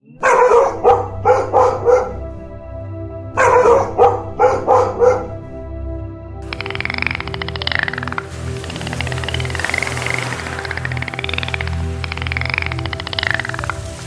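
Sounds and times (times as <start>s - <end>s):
dog barking: 0.2s - 2.2s, 3.4s - 5.4s
background music with sustained notes: 0.2s - 14.0s.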